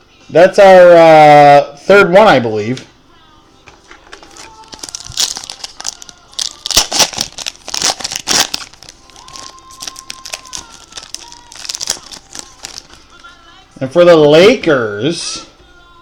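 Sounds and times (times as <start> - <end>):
wrapper tearing and crinkling: 4.1 - 13.3.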